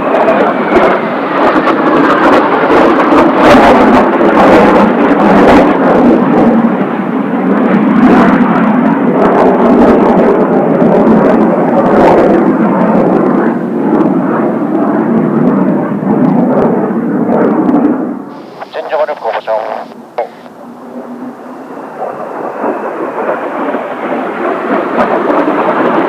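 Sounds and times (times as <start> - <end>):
jet engines roaring overhead: 0.0 - 26.0.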